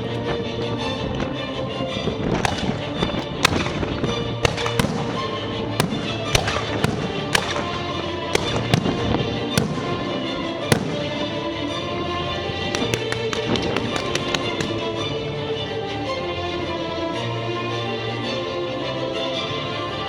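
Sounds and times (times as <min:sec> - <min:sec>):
background music: 0:00.0 - 0:20.0
fireworks banging: 0:02.4 - 0:15.1.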